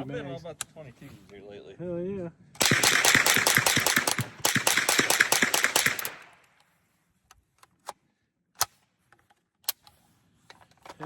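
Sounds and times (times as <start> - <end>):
suppressed rifle rapid fire: 2.6 - 6.5.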